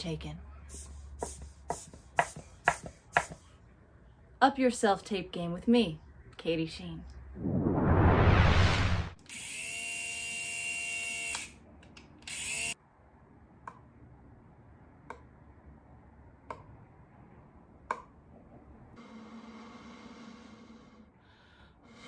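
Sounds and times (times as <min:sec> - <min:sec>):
loud whoosh: 0:07.3 - 0:09.2.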